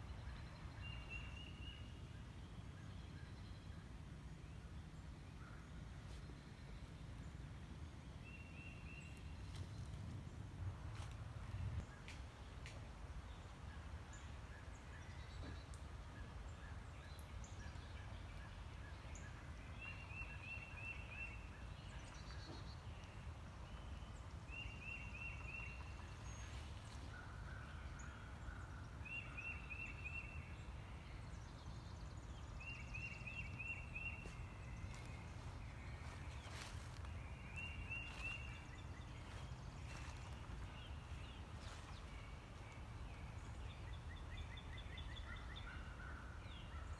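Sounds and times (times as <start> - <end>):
steady low rumble: 9.2 - 11.9.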